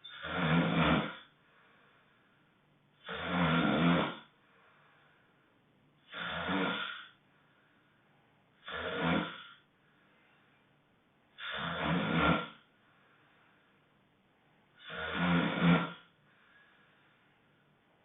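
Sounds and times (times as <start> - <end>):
loud honking snoring: 0.0 - 1.3, 3.0 - 4.3, 6.1 - 7.1, 8.6 - 9.6, 11.4 - 12.7, 14.8 - 16.1.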